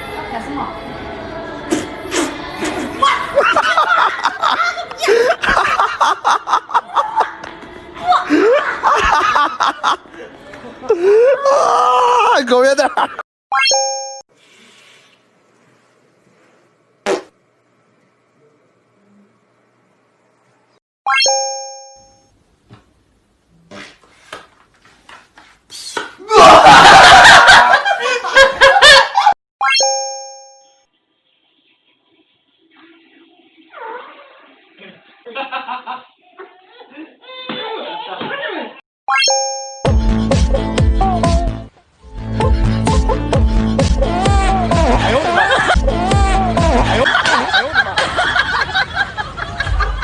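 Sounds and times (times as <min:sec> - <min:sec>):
people laughing: 0:02.7 - 0:11.5, 0:26.3 - 0:29.4, 0:34.8 - 0:38.6, 0:44.7 - 0:50.0
bell-like ding: 0:21.1 - 0:22.3, 0:29.7 - 0:30.9, 0:39.1 - 0:40.0.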